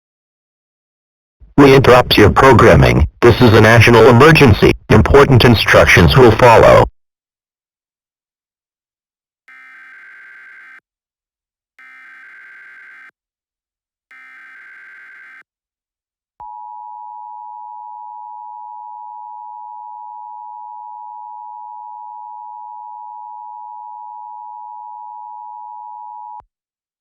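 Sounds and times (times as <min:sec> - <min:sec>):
two-tone alarm: 0:09.5 - 0:10.8.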